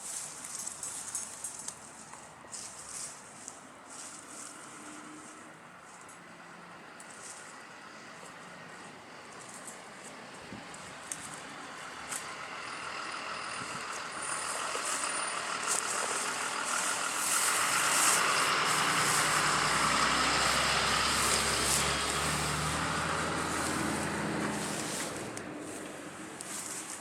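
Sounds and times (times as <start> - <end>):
vehicle driving past: 11.4 - 27.0.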